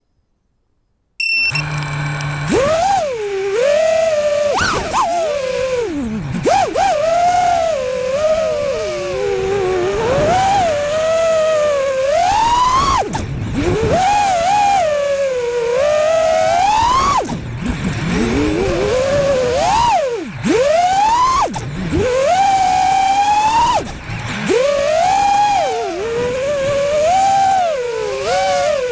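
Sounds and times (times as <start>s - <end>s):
quadcopter motors whining: 1.2s - 28.9s.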